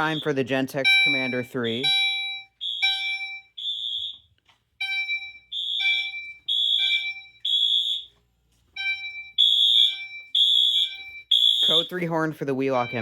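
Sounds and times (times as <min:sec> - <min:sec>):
fire alarm horn: 0:00.0 - 0:08.2, 0:08.8 - 0:13.0
ringing alarm chime strokes: 0:08.8 - 0:13.0.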